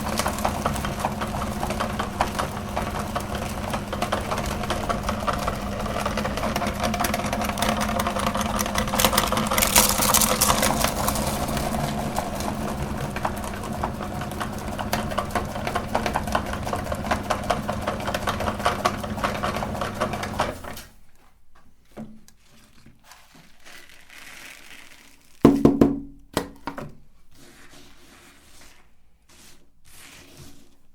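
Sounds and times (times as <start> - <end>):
fine crackling of grinding: 0.0 - 15.6
electric meat grinder running: 0.0 - 20.7
knocks: 25.5 - 26.9.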